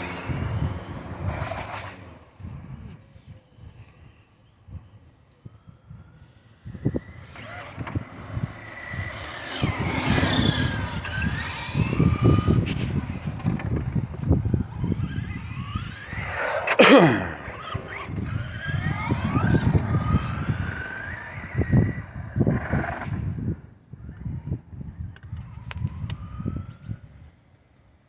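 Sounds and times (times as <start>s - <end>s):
electric motor whining: 0.0s - 2.1s, 6.8s - 22.8s
tyre and drivetrain noise: 0.0s - 3.0s, 6.8s - 23.7s.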